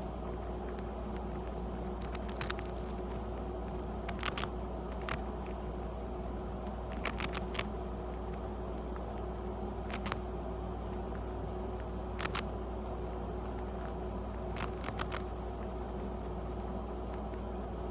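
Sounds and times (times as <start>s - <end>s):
rat crunching on a cracker: 0.0s - 17.9s
steady low hum: 0.0s - 17.9s.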